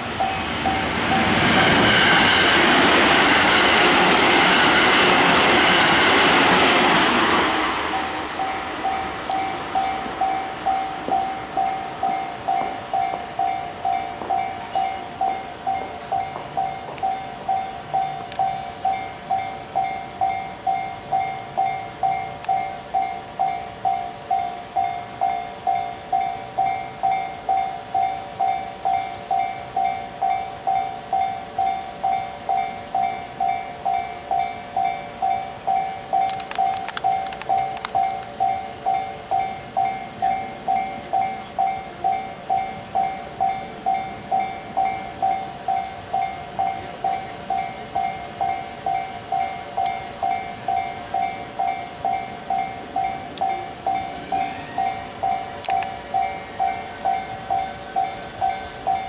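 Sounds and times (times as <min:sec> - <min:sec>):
level crossing bell ringing: 0:00.0 - 0:01.4, 0:07.9 - 0:59.0
sharp clicks: 0:36.2 - 0:38.4, 0:55.6 - 0:56.0.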